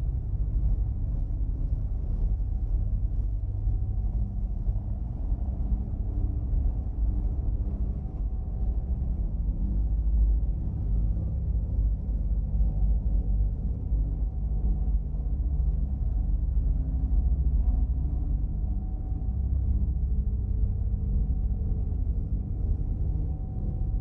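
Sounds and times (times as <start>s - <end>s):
deep rumble: 0.0s - 24.0s.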